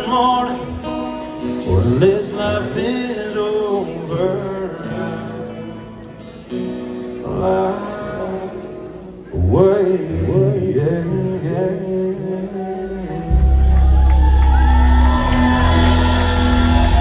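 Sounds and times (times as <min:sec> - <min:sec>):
man singing: 0:00.0 - 0:14.4
country band playing: 0:00.0 - 0:17.0
crowd shouting and whooping: 0:13.1 - 0:17.0.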